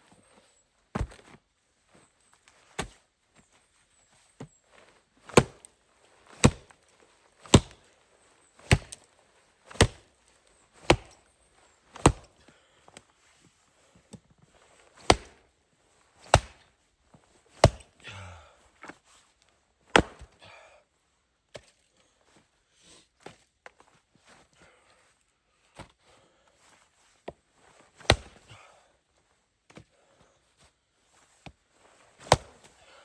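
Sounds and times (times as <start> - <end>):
wood chopping blows: 5.3 - 5.7, 6.3 - 6.7, 7.4 - 7.9, 8.6 - 9.0, 9.7 - 10.0, 10.8 - 11.2, 11.9 - 12.4, 15.0 - 15.4, 16.2 - 16.7, 17.6 - 18.2, 19.9 - 20.4, 28.0 - 28.5, 32.2 - 32.7.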